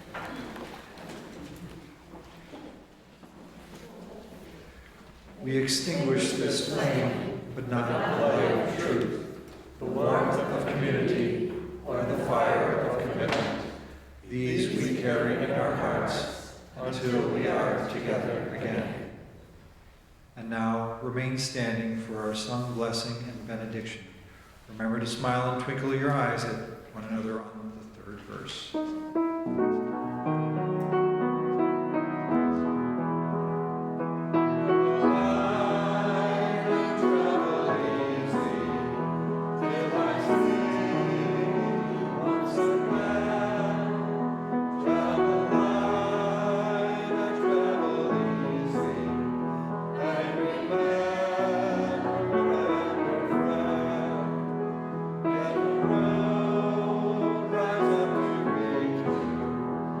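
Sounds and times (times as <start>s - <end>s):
piano accompaniment: 5.4s - 19.5s, 28.5s - 60.0s
congregation singing a hymn: 5.4s - 19.7s, 24.7s - 60.0s.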